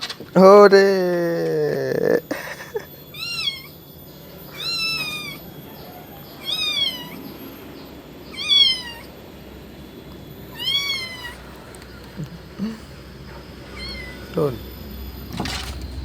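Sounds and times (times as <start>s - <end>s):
kitten mewing: 0.9s - 3.8s, 4.5s - 5.4s, 6.4s - 7.2s, 8.3s - 9.1s, 10.5s - 13.0s, 13.6s - 14.3s.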